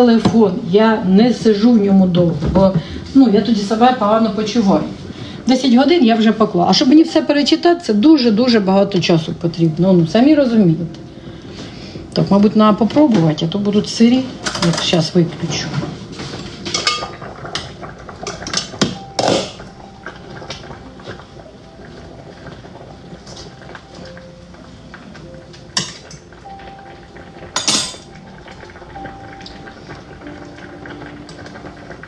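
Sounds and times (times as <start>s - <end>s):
cutlery and pot clattering: 14.4s - 19.6s, 25.8s - 26.2s, 27.5s - 28.1s.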